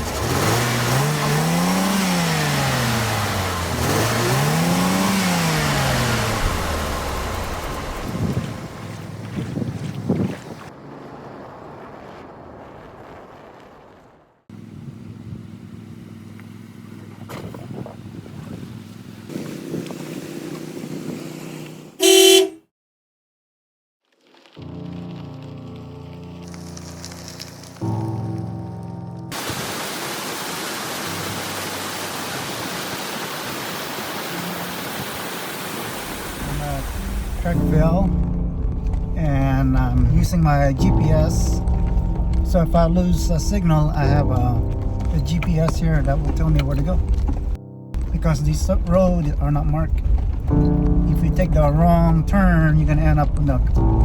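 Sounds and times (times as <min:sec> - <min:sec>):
car engine humming: 0:00.0 - 0:09.7, 0:14.5 - 0:22.6, 0:29.4 - 0:54.0
music: 0:24.6 - 0:29.4, 0:36.5 - 0:48.5, 0:50.0 - 0:54.0.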